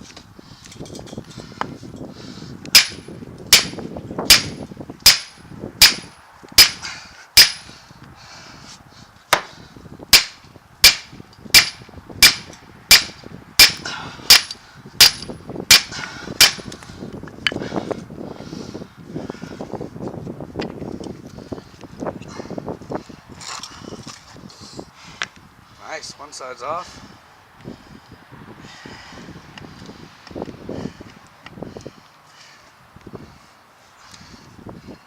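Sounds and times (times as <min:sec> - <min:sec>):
hammer blows on steel: 0:02.7 - 0:07.8.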